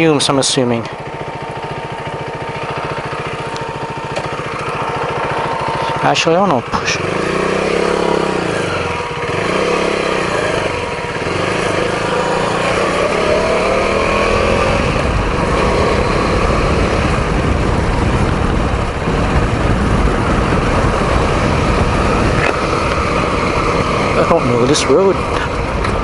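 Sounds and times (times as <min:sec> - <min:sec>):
motorcycle engine revving: 0:00.0 - 0:26.0
wind noise on microphone: 0:13.7 - 0:26.0.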